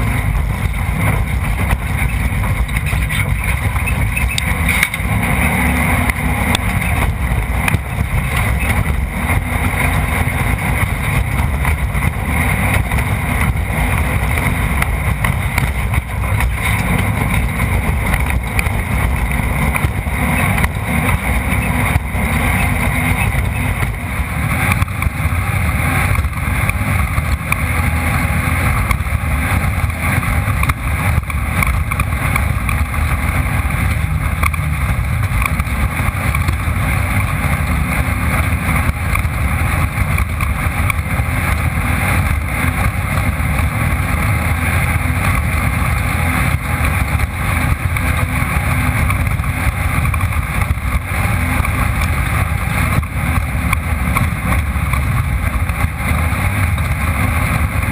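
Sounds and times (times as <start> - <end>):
race car engine drone: 0.0 - 57.9
road noise: 0.0 - 57.9.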